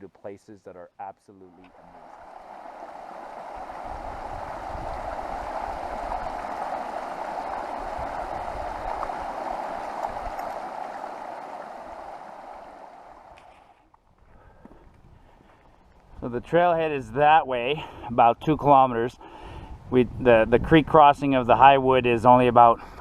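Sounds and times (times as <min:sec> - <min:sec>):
rushing stream water: 0:01.7 - 0:13.4.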